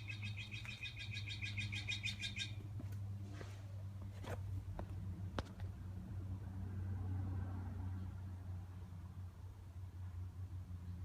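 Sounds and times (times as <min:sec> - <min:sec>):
small bird trilling: 0:00.0 - 0:02.6.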